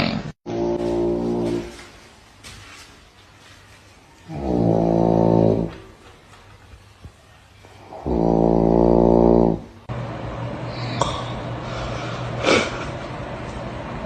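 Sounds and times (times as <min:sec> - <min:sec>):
steady low hum: 0:07.6 - 0:14.0
loud snore: 0:07.9 - 0:09.7.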